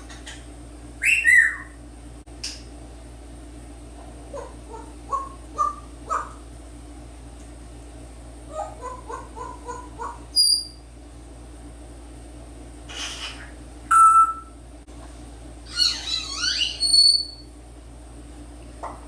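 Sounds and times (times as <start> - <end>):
parrot whistling and calling: 1.0 - 1.8, 8.5 - 10.8, 15.7 - 17.5
parrot squawk: 4.3 - 6.4, 8.5 - 10.7, 12.9 - 13.6, 15.7 - 17.4.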